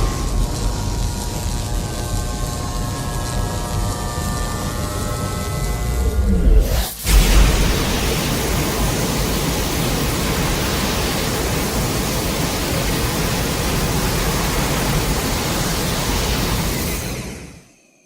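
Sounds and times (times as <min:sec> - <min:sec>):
loud rushing noise: 0:00.0 - 0:01.9, 0:05.9 - 0:12.9.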